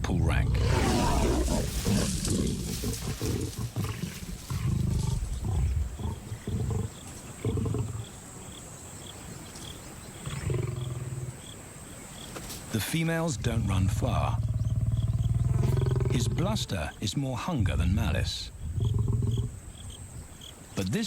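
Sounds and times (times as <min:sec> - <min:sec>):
lions growling: 0:00.2 - 0:08.6, 0:10.2 - 0:11.4, 0:13.4 - 0:16.8, 0:18.5 - 0:19.6.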